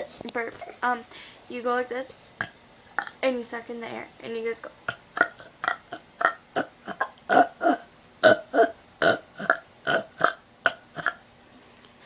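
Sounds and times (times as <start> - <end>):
person burping: 2.4 - 3.2, 4.9 - 11.2.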